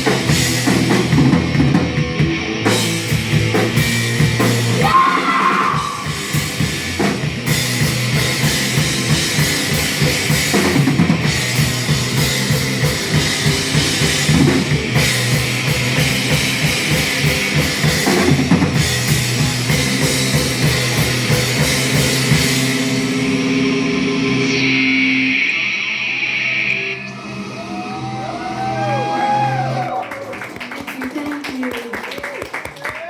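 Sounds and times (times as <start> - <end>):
rock drum kit beat: 0.0 - 24.6.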